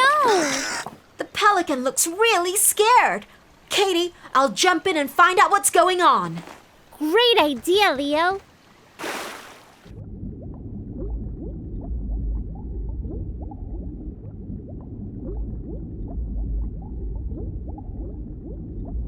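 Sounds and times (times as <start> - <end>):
splash of jumping into water: 9.0 - 9.9
underwater bubbling and gurgling: 9.8 - 19.0.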